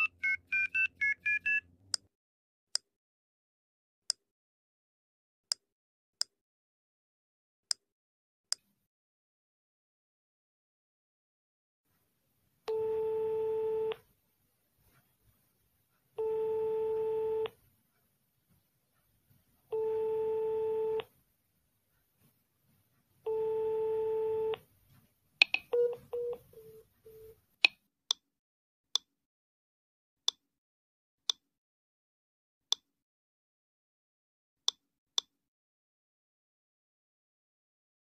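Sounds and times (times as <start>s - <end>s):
short beeps: 0.0s - 1.6s.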